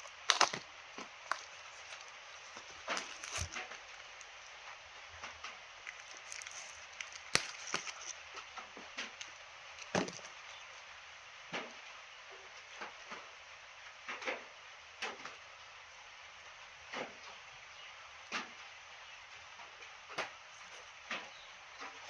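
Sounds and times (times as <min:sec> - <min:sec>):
handling clicks and crackles: 0:00.0 - 0:10.9
faint steady hiss: 0:00.0 - 0:22.0.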